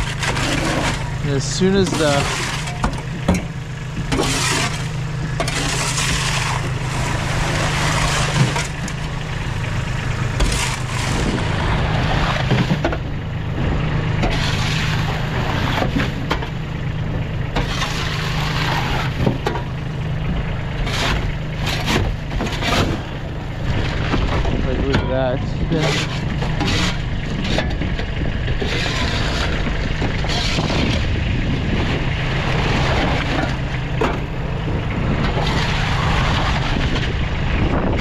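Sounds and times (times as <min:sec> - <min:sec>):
engine running: 0:00.0 - 0:38.0.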